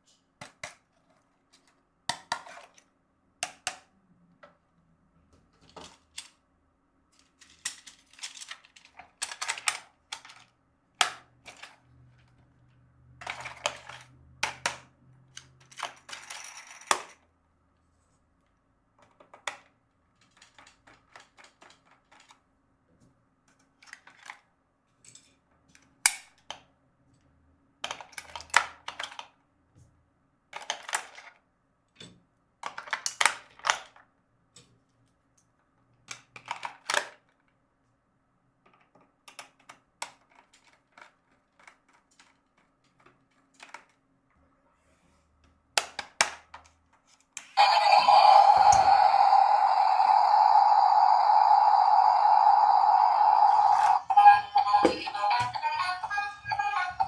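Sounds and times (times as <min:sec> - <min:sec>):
plastic toy parts clicking: 0:07.2 - 0:11.8.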